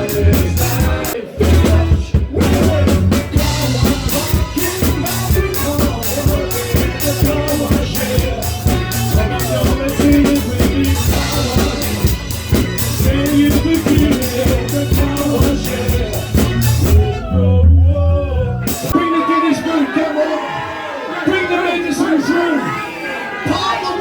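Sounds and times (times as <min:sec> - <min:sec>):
soul band playing: 0:00.0 - 0:19.0.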